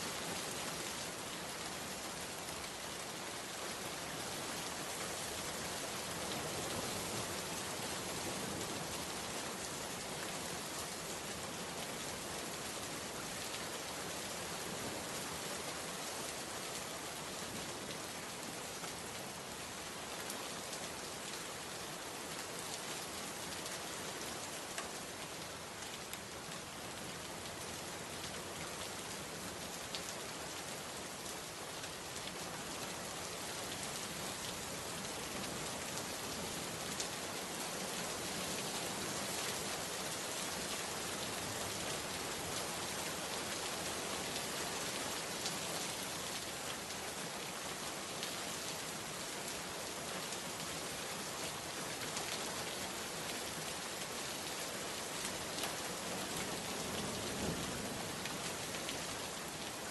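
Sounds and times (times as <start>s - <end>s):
rain pattering: 16.2s - 59.9s.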